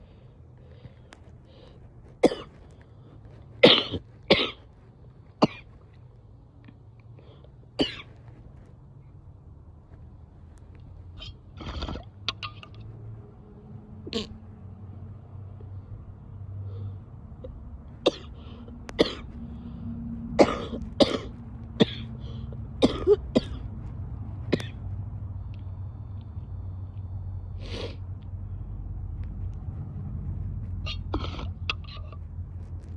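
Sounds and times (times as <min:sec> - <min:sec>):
woman coughing wetly: 0:02.2 - 0:02.5, 0:03.6 - 0:04.6, 0:07.8 - 0:08.1, 0:18.0 - 0:18.3, 0:19.0 - 0:19.3, 0:20.4 - 0:22.1, 0:22.8 - 0:23.6.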